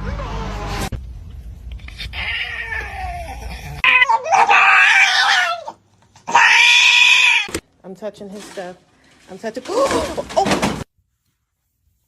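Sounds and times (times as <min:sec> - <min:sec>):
cat yowling: 0:02.0 - 0:07.5.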